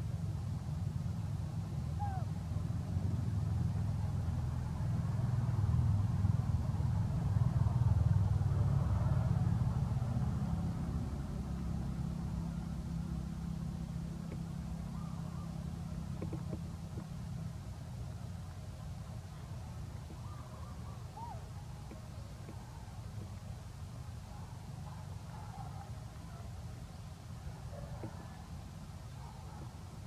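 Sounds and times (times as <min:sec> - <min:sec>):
low engine hum: 0:00.0 - 0:30.0.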